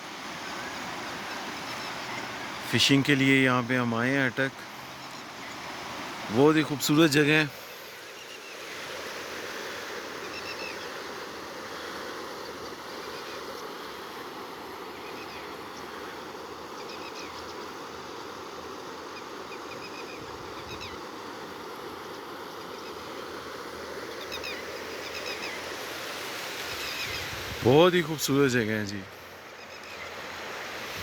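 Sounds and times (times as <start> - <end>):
river water rushing: 0.0 - 31.0
small birds chirping: 22.0 - 27.6.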